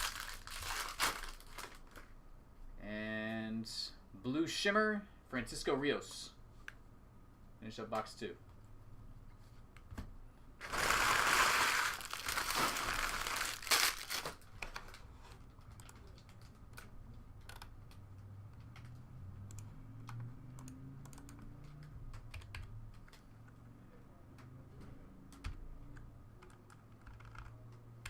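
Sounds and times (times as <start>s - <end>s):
card packaging tearing and crinkling: 0.0s - 2.0s, 10.6s - 14.5s.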